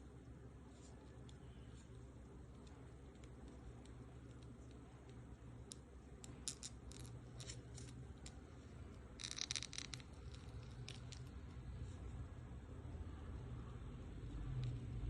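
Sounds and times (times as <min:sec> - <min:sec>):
candy wrapper crinkling: 0:09.2 - 0:11.4.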